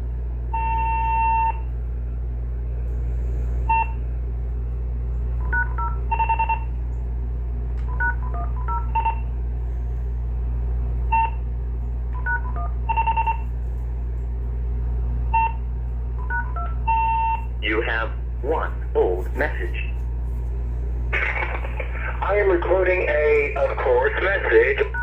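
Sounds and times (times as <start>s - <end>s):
steady low hum: 0.0s - 25.0s
answering machine beeps: 3.7s - 4.0s, 5.4s - 6.7s, 7.9s - 9.2s, 11.1s - 11.4s, 12.2s - 13.4s, 15.3s - 15.6s, 16.2s - 17.4s.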